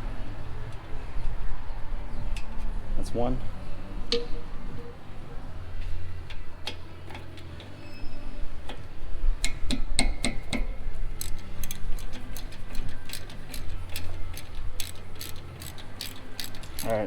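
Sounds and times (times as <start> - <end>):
ratchet wrench clicking: 9.4 - 17.0.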